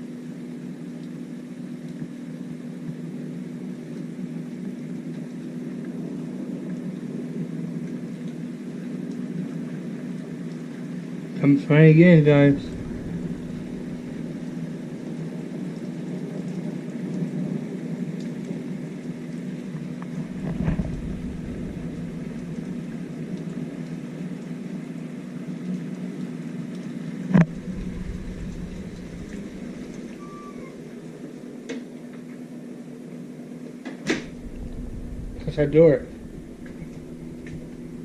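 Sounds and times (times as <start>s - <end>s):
steady rain: 0.0s - 38.0s
low hum: 12.0s - 15.5s, 19.8s - 24.5s, 27.3s - 31.2s, 34.2s - 38.0s.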